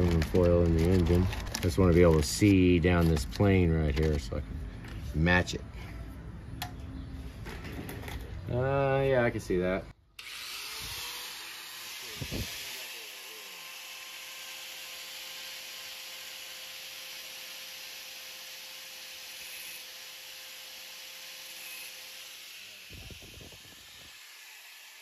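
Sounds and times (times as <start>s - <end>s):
grinder grinding metal: 0.0s - 4.3s, 10.2s - 25.0s.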